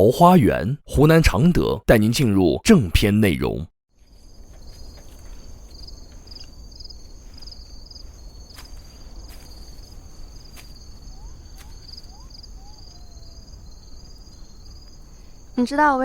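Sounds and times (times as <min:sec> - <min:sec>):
insects chirping: 0:00.0 - 0:16.0
faint ticks: 0:04.5 - 0:06.7.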